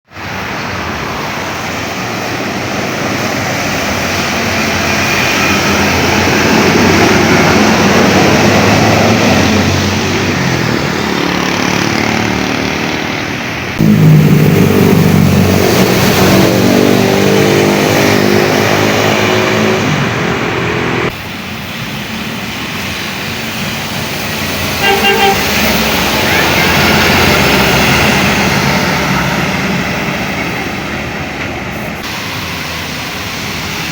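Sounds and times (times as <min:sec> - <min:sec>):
traffic: 0:00.0 - 0:33.9
rain hiss: 0:21.1 - 0:26.6, 0:31.7 - 0:33.9
multi-tone bus air horns: 0:24.7 - 0:28.2, 0:31.9 - 0:33.9.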